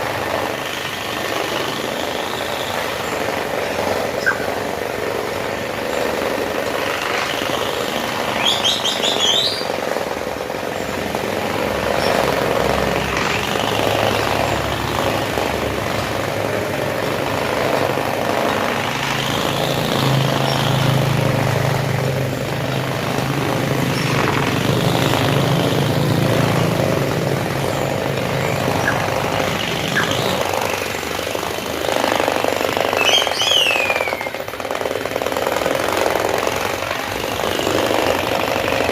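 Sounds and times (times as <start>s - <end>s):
carpet cleaning machine running: 0.0s - 38.9s
bird chirping: 4.2s - 4.6s, 8.3s - 9.8s, 27.5s - 30.7s, 32.9s - 34.4s.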